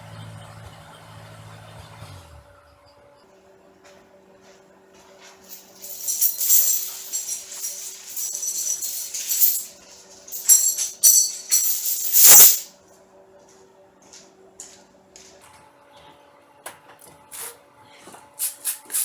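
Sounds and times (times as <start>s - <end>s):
metal jingling and clattering: 5.2s - 12.7s.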